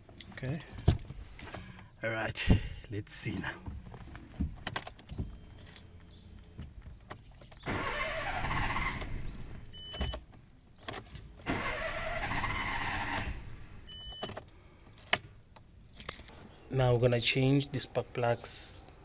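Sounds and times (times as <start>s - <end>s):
starter motor cranking engine: 7.6s - 9.5s, 11.4s - 13.6s.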